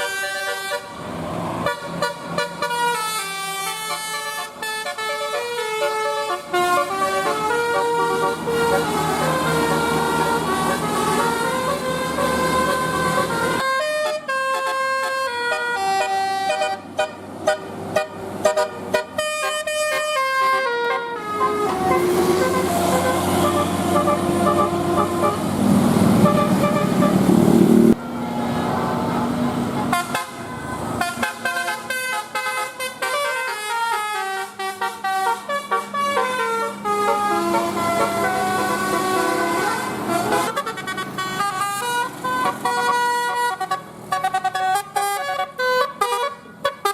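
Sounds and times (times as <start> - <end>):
musical air horn tunes: 1.7 - 25.6.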